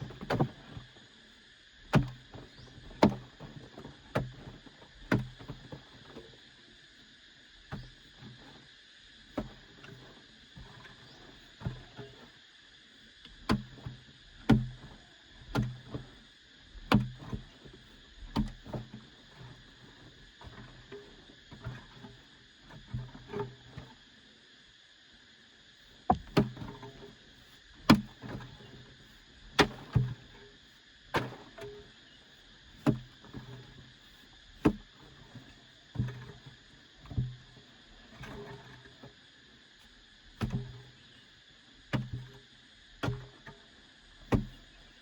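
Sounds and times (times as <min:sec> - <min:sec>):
insects buzzing: 0:00.0 - 0:45.0
dull thuds: 0:26.1 - 0:26.7, 0:27.9 - 0:28.3.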